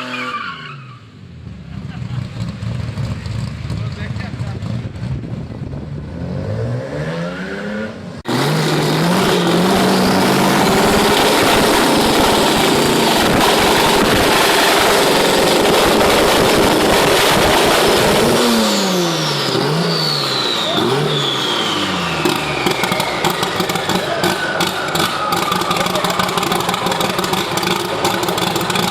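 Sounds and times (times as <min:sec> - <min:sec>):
car engine revving: 0:00.0 - 0:28.9
high falling whistle: 0:19.2 - 0:26.6.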